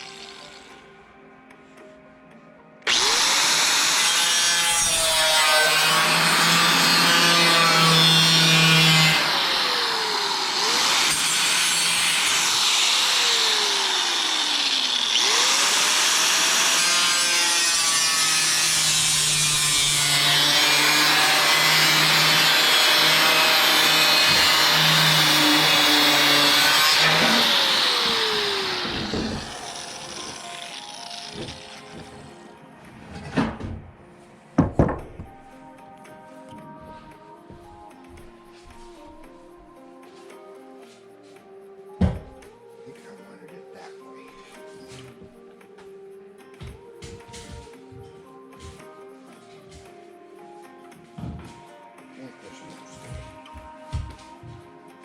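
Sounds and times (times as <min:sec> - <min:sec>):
power saw cutting sheet metal: 0:00.0 - 0:00.9, 0:02.9 - 0:32.4.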